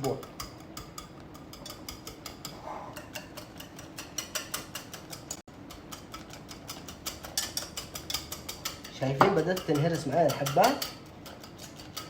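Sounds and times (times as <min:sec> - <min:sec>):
potato masher tapping a pan: 0:00.0 - 0:12.0.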